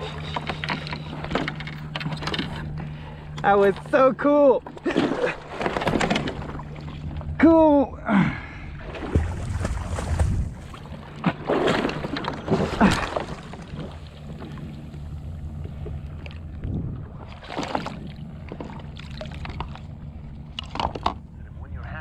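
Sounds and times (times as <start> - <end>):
water splashing around paddleboard: 0.0 - 7.4, 8.8 - 21.3
low wind rumble on microphone: 4.8 - 22.0.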